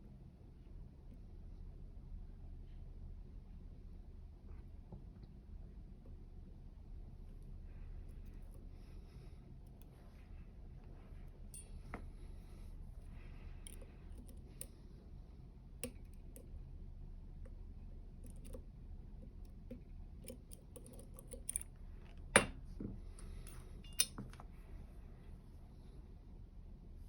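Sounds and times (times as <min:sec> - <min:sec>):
metallic lock picking clicks: 0:13.6 - 0:14.8, 0:15.8 - 0:16.5, 0:18.2 - 0:18.6, 0:19.2 - 0:21.7, 0:23.4 - 0:24.3.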